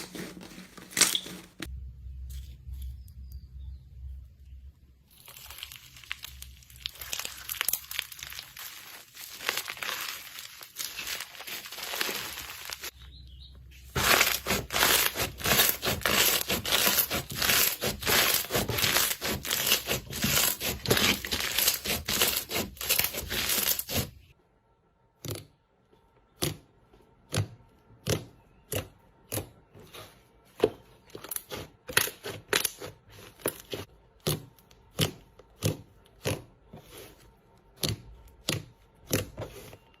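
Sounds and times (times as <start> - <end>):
slime crackling squish: 5.1 - 13.0.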